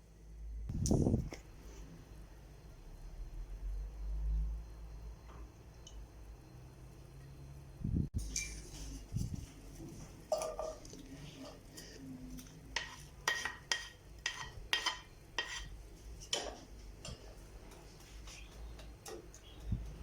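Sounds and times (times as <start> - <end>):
utensils clinking against dishes: 10.3 - 12.1.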